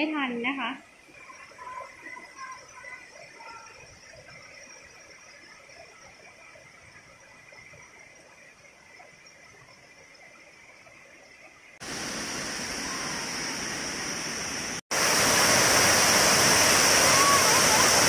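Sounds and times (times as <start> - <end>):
waterfall roaring: 11.8 - 18.0.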